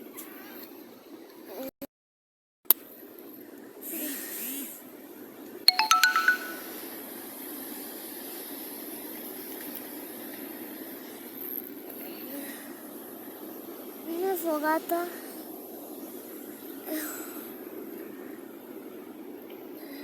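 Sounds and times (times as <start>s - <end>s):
phone notification chime: 5.7s - 6.8s.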